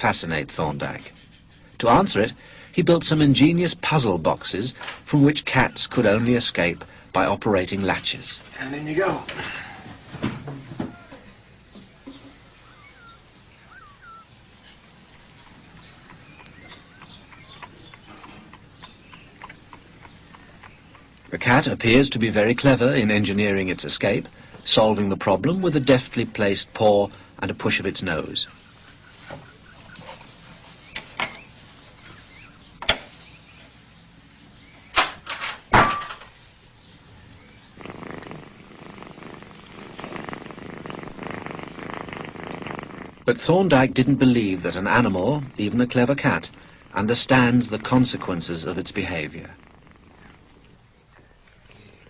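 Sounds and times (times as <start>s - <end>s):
faint short chirping calls: 11.0s - 21.9s, 28.4s - 35.0s.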